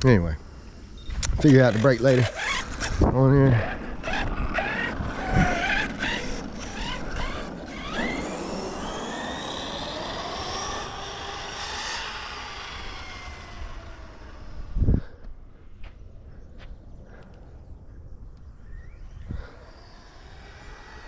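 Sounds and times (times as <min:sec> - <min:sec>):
rc car motor whining: 0:00.6 - 0:15.3, 0:18.6 - 0:21.0
sharp clicks: 0:01.1 - 0:03.0.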